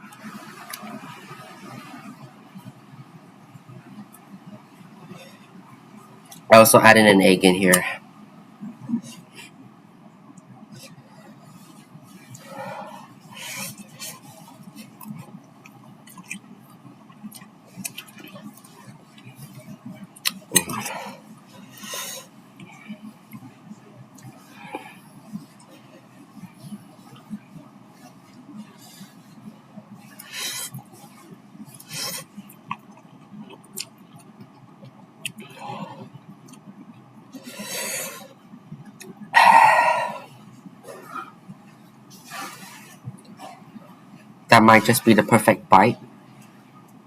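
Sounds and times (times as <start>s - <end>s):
soft chewing: 10.2s - 44.4s.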